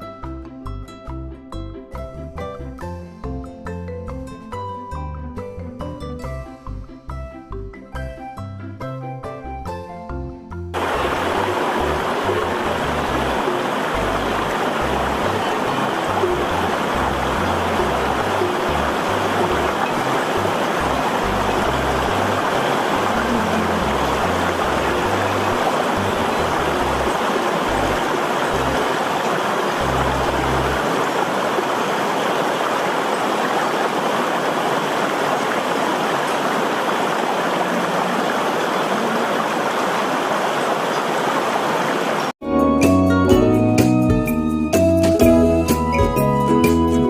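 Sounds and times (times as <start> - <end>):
steady rushing noise: 10.8 - 42.3.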